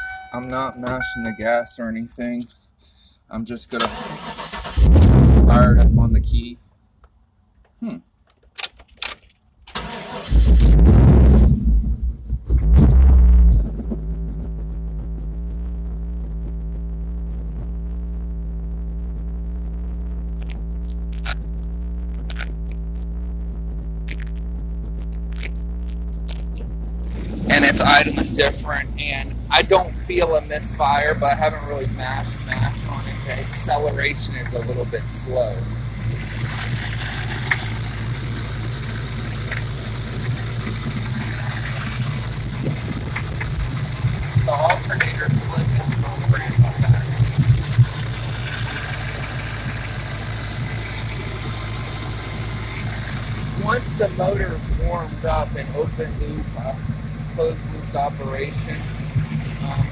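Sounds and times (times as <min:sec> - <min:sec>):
engine idling: 0:00.0 - 0:03.0, 0:03.8 - 0:06.5, 0:09.7 - 0:59.9
constant hiss: 0:23.8 - 0:59.9
light engine ticks: 0:29.5 - 0:59.9.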